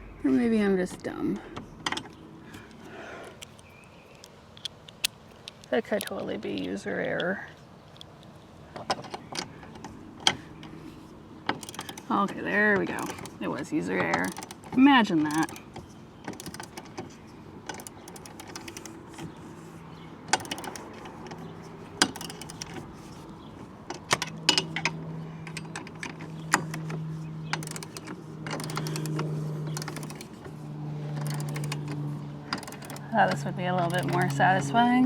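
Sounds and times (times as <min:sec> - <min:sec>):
steady low hum: 0:00.0 - 0:03.8
ratchet wrench clicking: 0:11.6 - 0:12.1, 0:12.8 - 0:13.4, 0:14.1 - 0:15.7, 0:16.3 - 0:17.0, 0:17.7 - 0:19.0, 0:20.3 - 0:21.4, 0:22.0 - 0:22.8, 0:27.5 - 0:30.4, 0:31.2 - 0:34.7
metal tools clinking: 0:27.5 - 0:30.4, 0:31.1 - 0:34.8.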